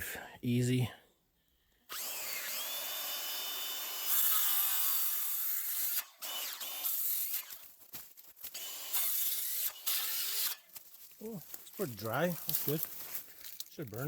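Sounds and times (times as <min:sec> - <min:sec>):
circular saw cutting wood: 0:01.9 - 0:07.6, 0:08.5 - 0:10.7.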